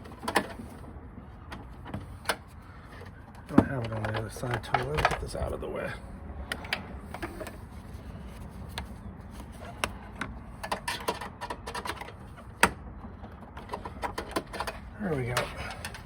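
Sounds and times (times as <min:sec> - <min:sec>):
plastic parts clicking into place: 0:01.5 - 0:05.5.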